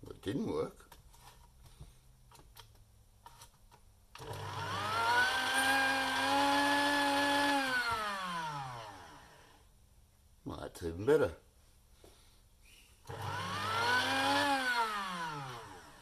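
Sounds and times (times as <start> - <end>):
coffee grinder motor whine: 4.2 - 9.7, 13.1 - 16.0.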